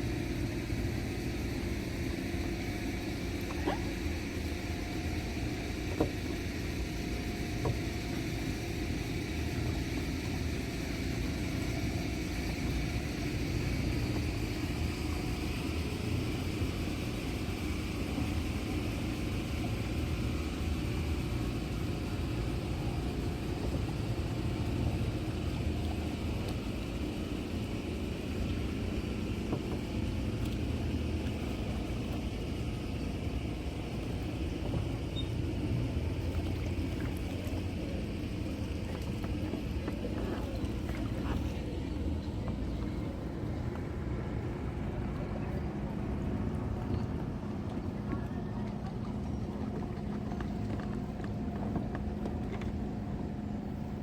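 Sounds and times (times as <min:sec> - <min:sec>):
motorboat engine rumble: 0:00.0 - 0:54.0.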